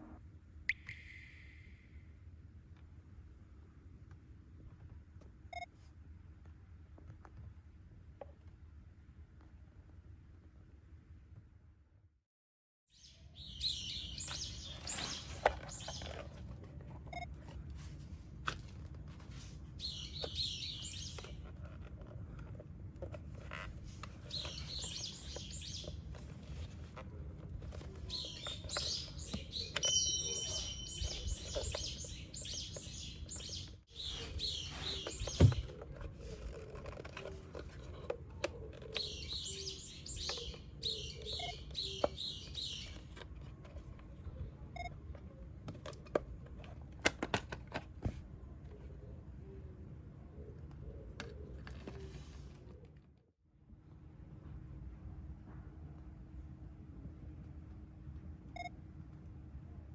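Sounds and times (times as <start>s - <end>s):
small birds chirping: 12.9s - 16.4s, 19.8s - 21.6s, 23.5s - 26.8s, 27.6s - 36.5s, 37.2s - 43.2s.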